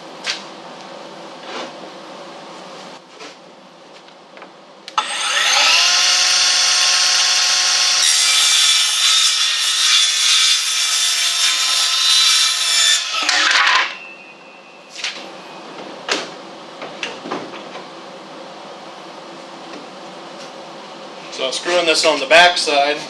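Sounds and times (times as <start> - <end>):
power saw cutting wood: 5.0 - 14.1.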